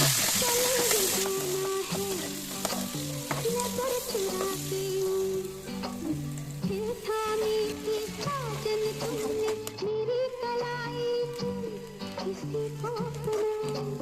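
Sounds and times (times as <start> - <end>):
food sizzling in a pan: 0.0 - 9.7
background music: 0.0 - 14.0.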